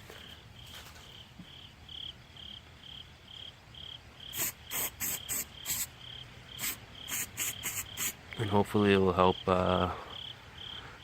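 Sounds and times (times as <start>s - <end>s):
cricket chirping: 0.0s - 11.0s
aerosol can spraying: 4.3s - 5.9s, 6.6s - 8.2s.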